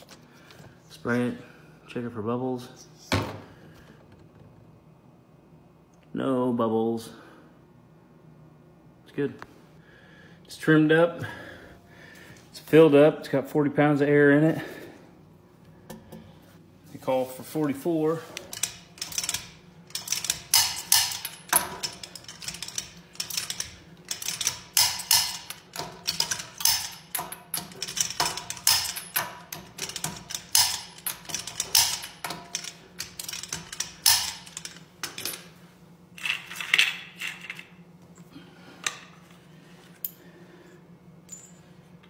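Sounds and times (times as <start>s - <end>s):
metallic clicks and clanks of tools: 18.4s - 35.5s.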